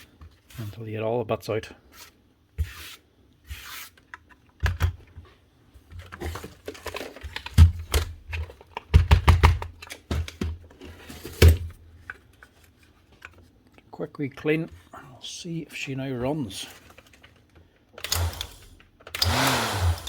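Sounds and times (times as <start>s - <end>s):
plastic parts clicking and scraping: 5.9s - 14.9s, 16.7s - 20.0s.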